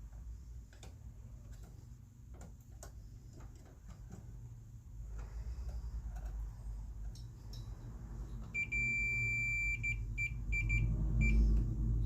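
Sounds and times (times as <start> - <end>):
continuity tester beeping: 8.5 - 11.4.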